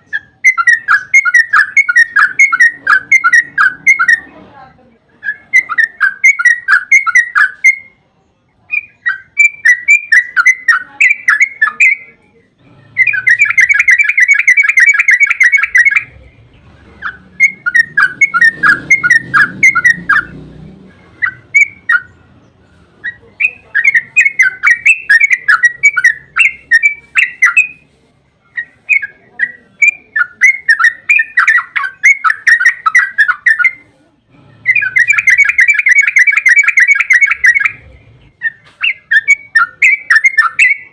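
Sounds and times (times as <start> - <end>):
bulbul bubbling chatter: 8.6 - 27.9, 28.5 - 40.9.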